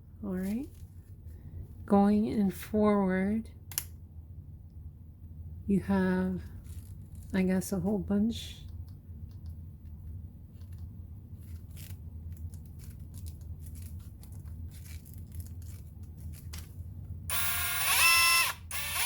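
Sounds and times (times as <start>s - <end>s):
impact wrench motor whining: 17.3s - 19.0s.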